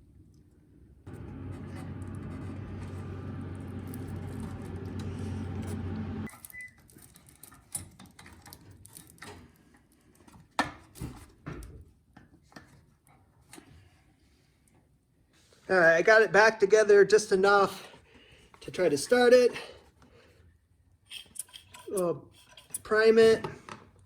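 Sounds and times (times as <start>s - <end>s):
mechanical hum: 1.0s - 6.7s
clicks of parts and tools handled: 21.1s - 24.0s.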